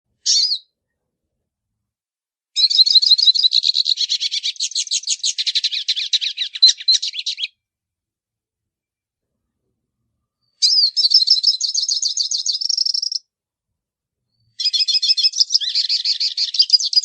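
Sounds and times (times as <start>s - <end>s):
bird singing: 0.2s - 0.7s, 2.6s - 7.6s, 10.4s - 13.2s, 14.3s - 17.0s
high chattering bird song: 0.2s - 0.7s, 2.6s - 7.6s, 10.4s - 13.2s, 14.4s - 17.0s.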